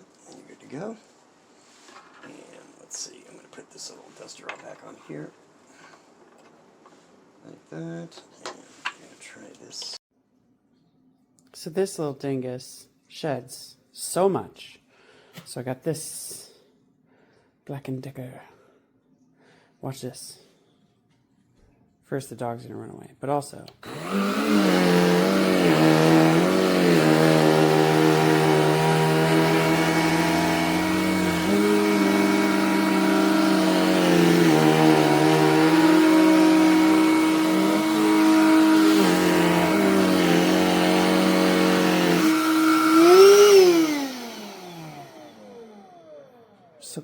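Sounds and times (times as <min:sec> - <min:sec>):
handheld vacuum cleaner whine: 0:23.8 - 0:46.8.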